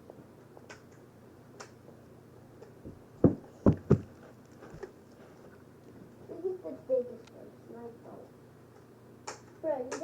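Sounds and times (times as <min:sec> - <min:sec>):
dull thumps: 0:02.8 - 0:04.2.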